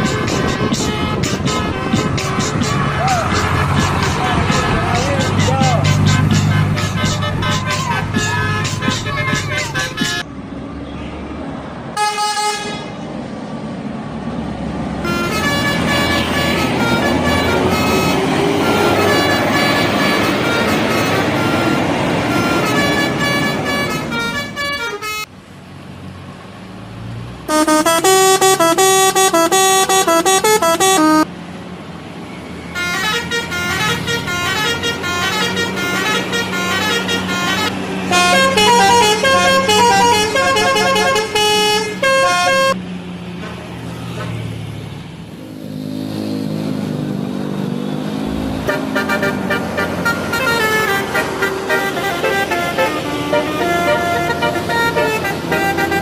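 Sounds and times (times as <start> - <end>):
multi-tone bus air horn: 0.0 - 10.2, 12.0 - 13.0, 15.0 - 25.3, 27.5 - 31.3, 32.8 - 42.8, 48.6 - 56.0
bus engine running: 0.0 - 56.0.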